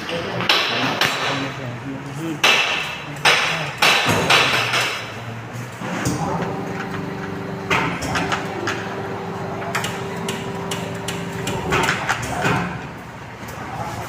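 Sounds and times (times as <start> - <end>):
steady mechanical hum: 0.0 - 14.0
sharp knocks: 2.4 - 5.2, 9.6 - 12.8.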